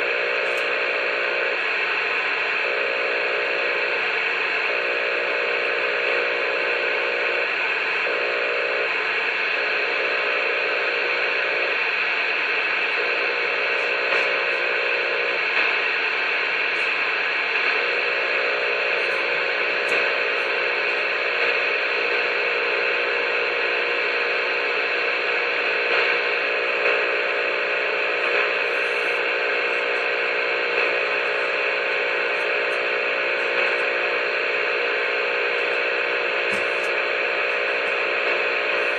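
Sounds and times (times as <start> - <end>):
faint hum: 0.0 - 38.9
radio static hiss: 0.0 - 38.9.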